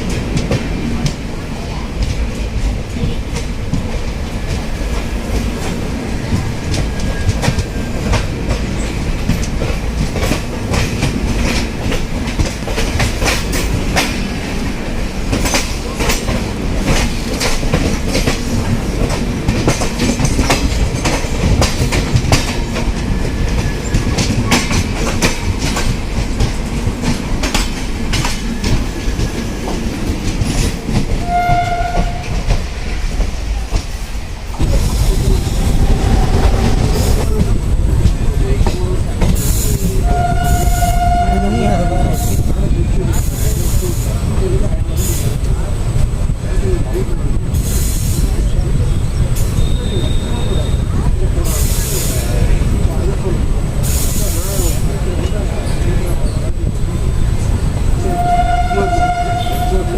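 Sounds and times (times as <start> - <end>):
train wheels clickety-clack: 0.0 - 59.9.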